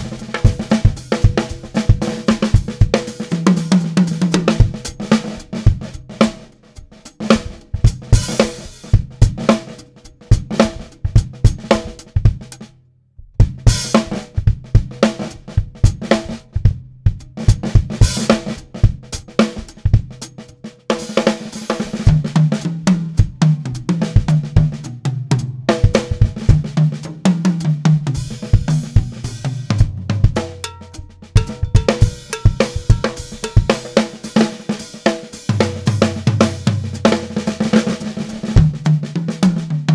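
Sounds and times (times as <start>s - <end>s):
bass drum: 0.0s - 6.4s, 7.1s - 20.6s, 22.0s - 34.7s, 35.5s - 39.9s
snare drum: 0.0s - 9.8s, 17.4s - 39.9s
toms playing a melody: 30.0s - 34.6s.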